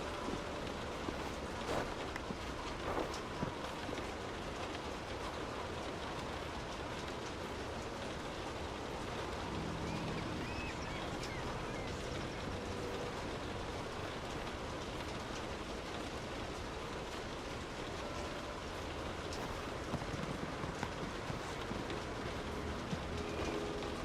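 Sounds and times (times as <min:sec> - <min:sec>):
steady rain falling: 0:00.0 - 0:24.0.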